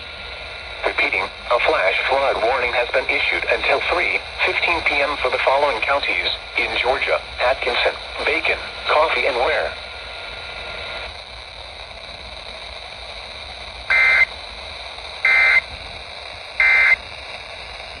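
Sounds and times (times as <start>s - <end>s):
radio hiss: 0.0s - 18.0s
warbling two-tone digital data bursts: 13.9s - 14.3s, 15.2s - 15.6s, 16.6s - 17.0s.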